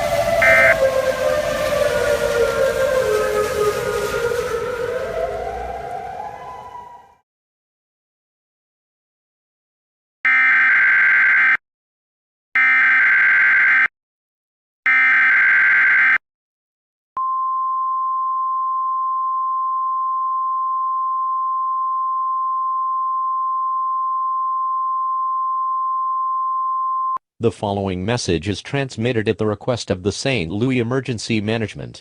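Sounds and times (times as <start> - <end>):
steady one-pitch alert tone: 0.4 - 0.8.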